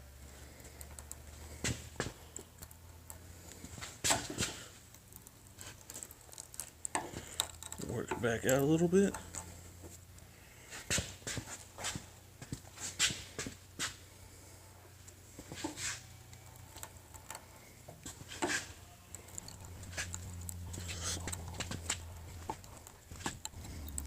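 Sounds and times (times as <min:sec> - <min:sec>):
die cutting threads clicking: 0:00.5 - 0:09.5, 0:16.0 - 0:24.0.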